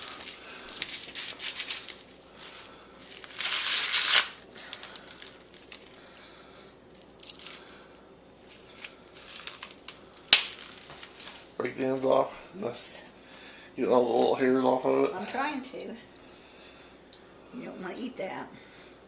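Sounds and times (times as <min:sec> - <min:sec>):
corn husks crinkling and tearing: 0:00.0 - 0:12.1
husk snapping: 0:03.2 - 0:06.3, 0:06.9 - 0:11.5.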